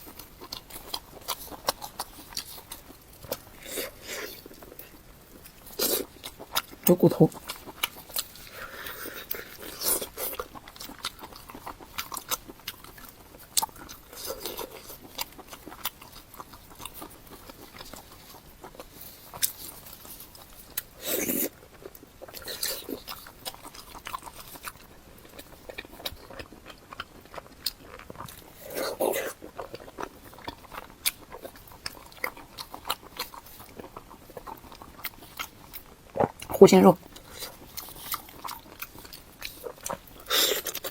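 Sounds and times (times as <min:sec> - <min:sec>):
person chewing meat: 0:00.0 - 0:40.9.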